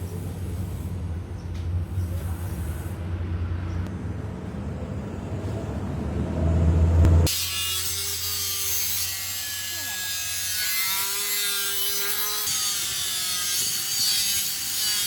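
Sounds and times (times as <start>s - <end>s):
low mechanical rumble: 0.0s - 7.3s.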